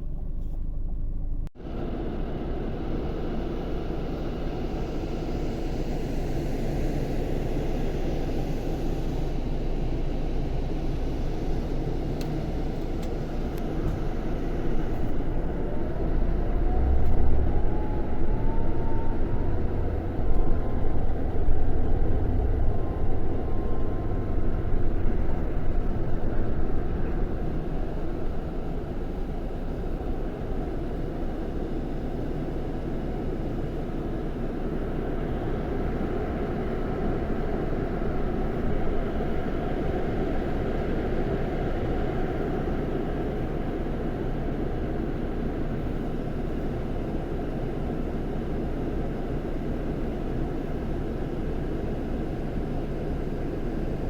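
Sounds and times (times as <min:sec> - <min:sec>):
bus diesel engine droning: 0:00.0 - 0:54.0
faint rising whine: 0:01.8 - 0:43.6.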